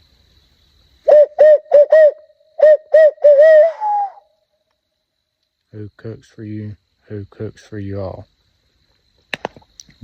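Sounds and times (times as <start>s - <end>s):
owl call hooting: 1.0s - 4.3s.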